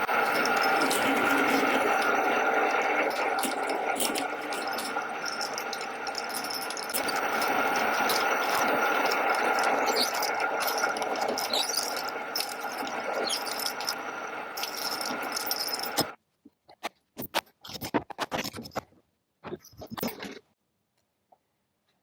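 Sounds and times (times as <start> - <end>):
machine tool cutting with squealing hiss: 0.0 - 16.1
handling clicks and scrapes: 0.0 - 20.6.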